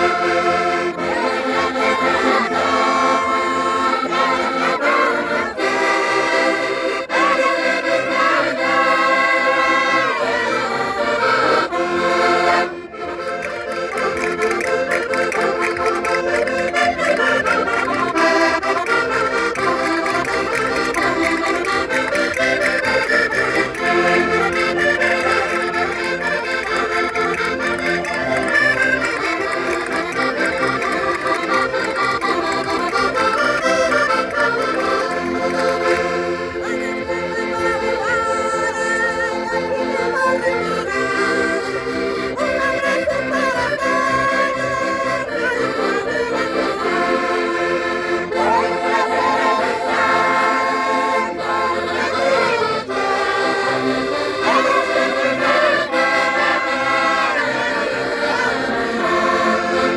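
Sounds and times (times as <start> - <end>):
concertinas playing folk tune: 0.0 - 59.9.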